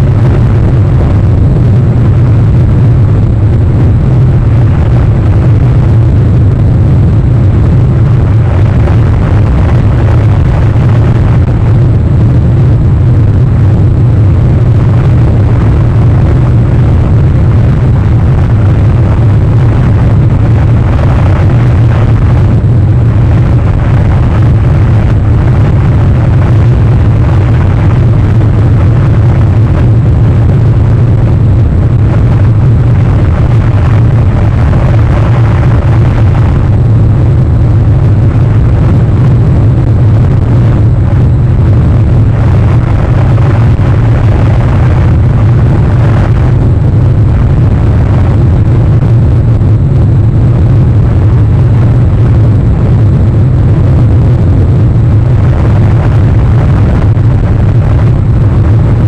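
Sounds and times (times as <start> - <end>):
wind buffeting microphone: 0.0 - 59.0.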